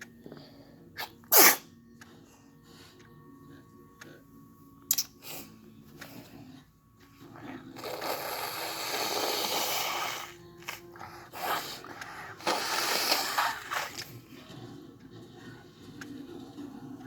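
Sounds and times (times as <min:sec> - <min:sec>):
person blowing nose: 0:01.0 - 0:01.7, 0:07.8 - 0:10.8, 0:12.4 - 0:14.1
short snort: 0:01.0 - 0:01.7, 0:07.8 - 0:14.2.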